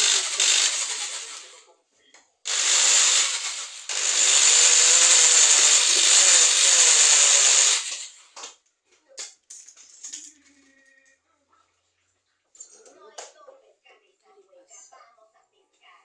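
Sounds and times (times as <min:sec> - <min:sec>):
power drill running: 0:00.0 - 0:01.6, 0:02.5 - 0:08.4.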